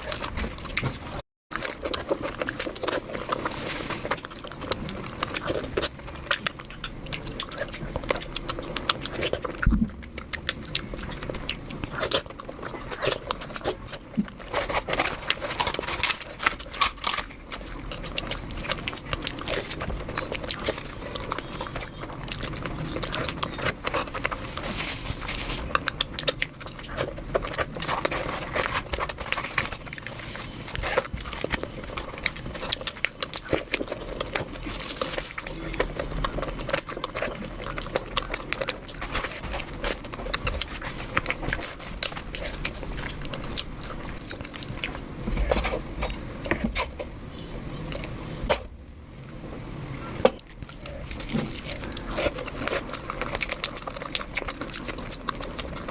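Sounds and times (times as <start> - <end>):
person chewing food: 0.0 - 49.4, 50.1 - 55.9.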